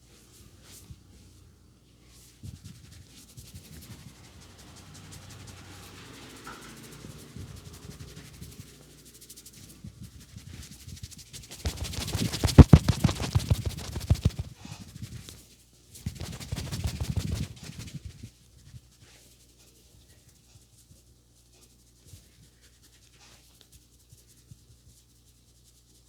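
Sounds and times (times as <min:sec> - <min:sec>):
hands rubbing head and neck: 0:02.0 - 0:14.6, 0:16.0 - 0:18.3
rapid hand strikes slapping: 0:11.4 - 0:14.5, 0:16.0 - 0:18.0.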